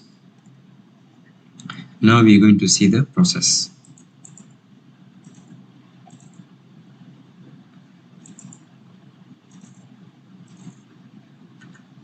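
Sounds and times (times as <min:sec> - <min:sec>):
low steady hum: 0:00.0 - 0:12.0
computer keyboard clicks: 0:03.8 - 0:04.6, 0:05.2 - 0:06.4, 0:08.2 - 0:08.7, 0:09.5 - 0:10.9, 0:11.6 - 0:11.9.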